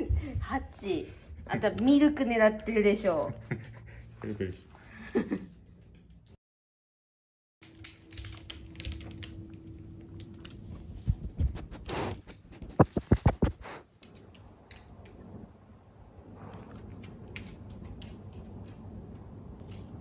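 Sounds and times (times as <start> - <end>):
kitten lapping milk: 16.4 - 18.1.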